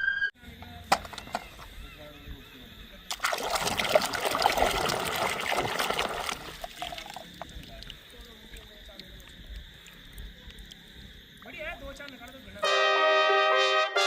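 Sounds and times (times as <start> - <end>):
water splashing over plastic toys: 3.1 - 12.6.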